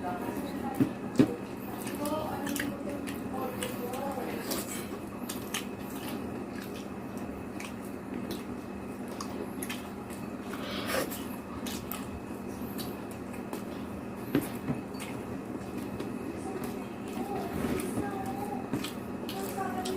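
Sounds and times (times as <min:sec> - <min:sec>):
wet chewing and mouth smacks: 0:01.8 - 0:13.8.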